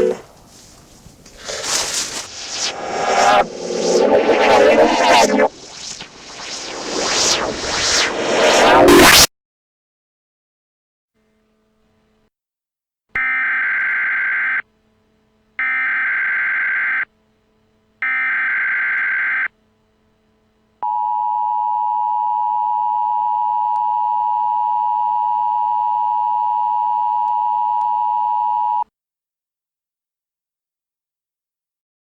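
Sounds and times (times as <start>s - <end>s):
two-tone attention signal: 0.0s - 0.2s
data header bursts: 15.6s - 17.1s, 18.0s - 19.5s.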